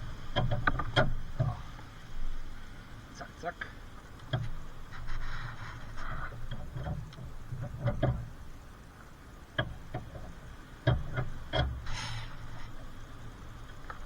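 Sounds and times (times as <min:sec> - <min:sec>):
short rustle: 0:04.5 - 0:06.8.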